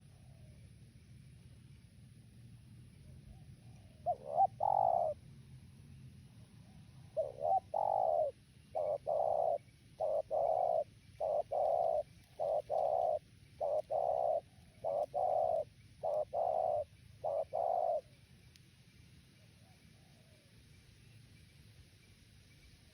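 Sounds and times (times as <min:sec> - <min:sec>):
dove cooing: 0:03.2 - 0:05.2, 0:06.4 - 0:18.1.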